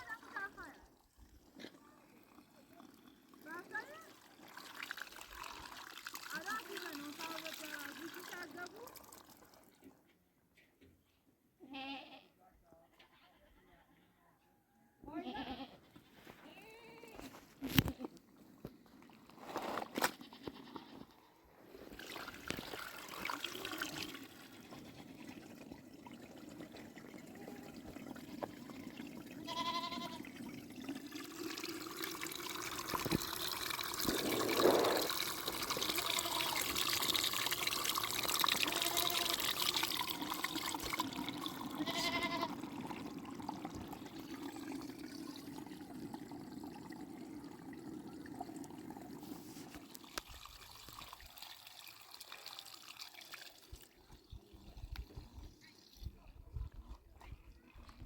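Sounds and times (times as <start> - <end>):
liquid pouring and trickling: 0.0 - 10.0, 17.2 - 20.2, 21.7 - 58.0
sheep bleating: 11.6 - 12.3, 15.2 - 15.8, 29.4 - 30.3, 35.9 - 36.7, 38.6 - 39.4, 41.8 - 42.6.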